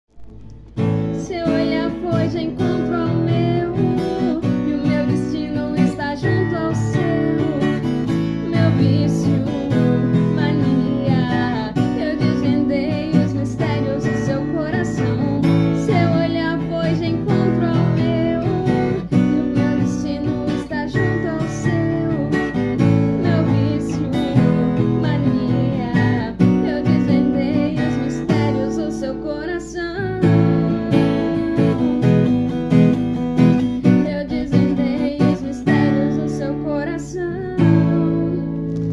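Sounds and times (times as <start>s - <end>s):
acoustic guitar strummed: 0.1s - 38.9s
woman singing softly: 1.1s - 32.3s, 33.7s - 38.9s.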